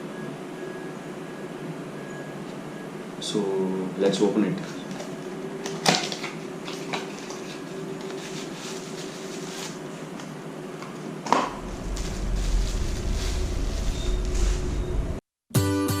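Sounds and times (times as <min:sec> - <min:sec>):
steady hum: 0:00.0 - 0:15.2
packaging rustling: 0:04.6 - 0:10.4
low rumble: 0:11.6 - 0:15.2.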